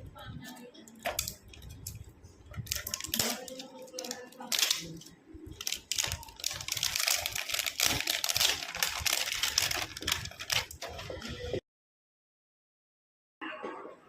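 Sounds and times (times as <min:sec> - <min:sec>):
packaging clicking and rustling: 0:00.8 - 0:11.4.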